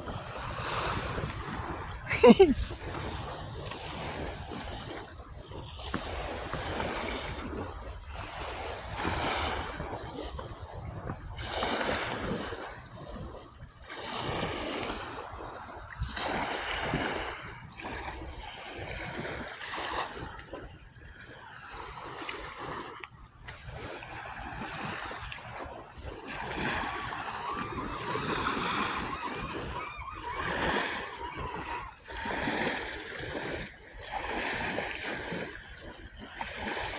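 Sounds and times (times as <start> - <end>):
bird whistled calls: 0.0 - 1.0, 15.5 - 21.7, 22.6 - 25.5, 27.3 - 36.9
ocean waves splashing on shore: 0.0 - 36.9.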